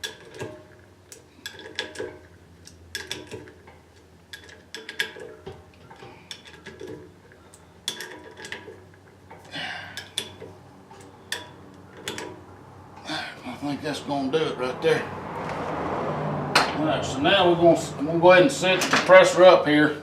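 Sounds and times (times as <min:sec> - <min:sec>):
hand tools clicking and clinking: 0:00.0 - 0:12.4.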